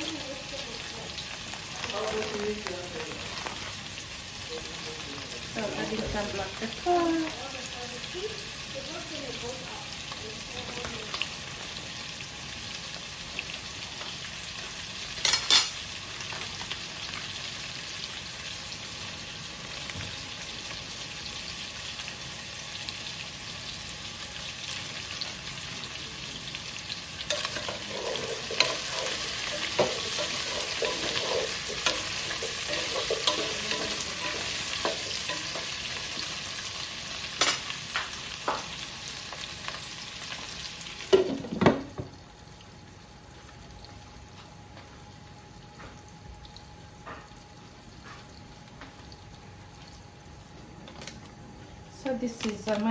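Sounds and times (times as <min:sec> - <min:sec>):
food sizzling in a frying pan: 0:00.0 - 0:52.9
stirring and scraping: 0:27.3 - 0:36.2.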